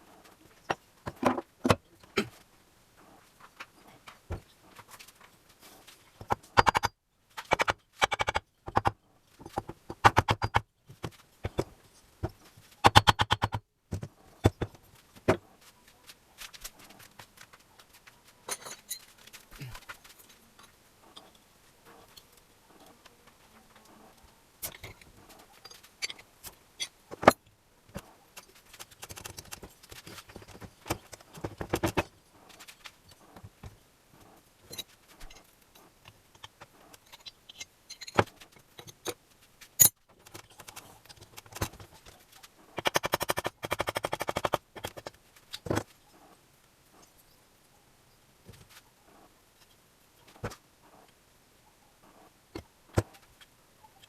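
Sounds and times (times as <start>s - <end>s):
metal tools clicking and rattling: 18.5s - 19.3s, 24.6s - 26.2s, 36.4s - 39.2s, 39.8s - 41.8s.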